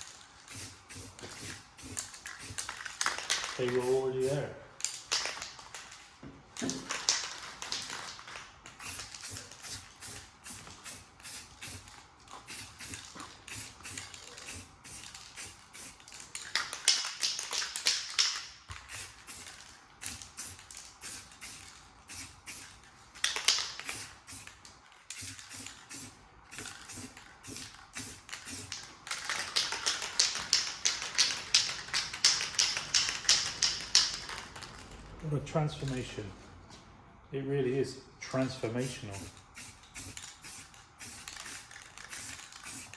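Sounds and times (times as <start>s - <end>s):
aerosol spray paint hissing: 0.5s - 2.7s, 8.8s - 16.0s, 18.9s - 22.7s, 23.8s - 24.5s, 25.2s - 28.8s, 38.8s - 42.9s.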